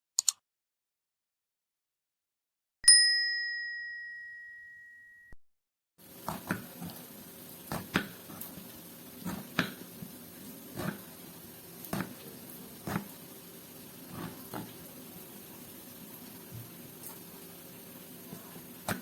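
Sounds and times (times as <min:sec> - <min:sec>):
bell-like ding: 0:02.8 - 0:05.4.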